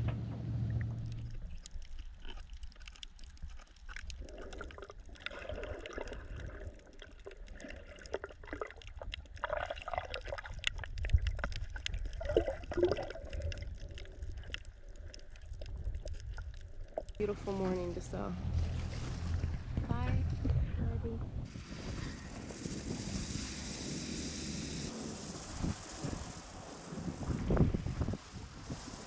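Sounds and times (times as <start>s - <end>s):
low steady rumble: 0.0s - 2.6s, 10.7s - 28.9s
water sloshing and dripping: 0.6s - 17.8s, 18.4s - 19.8s
small splashes and clicks: 0.9s - 17.2s.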